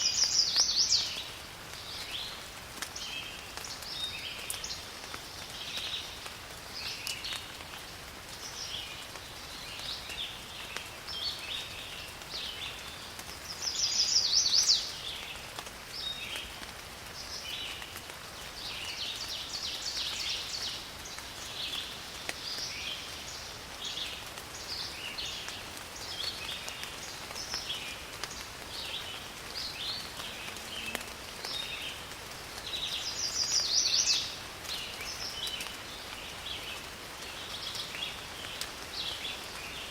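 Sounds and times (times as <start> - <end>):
steady rain in a forest: 0.0 - 39.9
birds chirping: 32.6 - 39.9.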